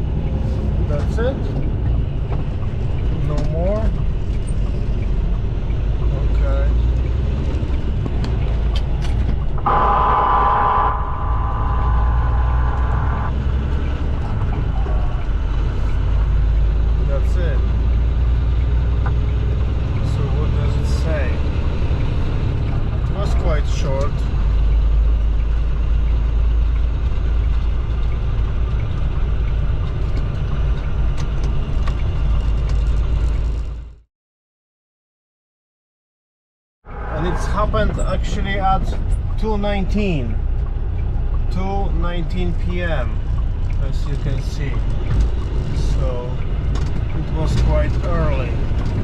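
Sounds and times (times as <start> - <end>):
traffic rumble: 0.0 - 34.0, 36.8 - 49.0
phone emergency alert two-tone: 9.6 - 13.3.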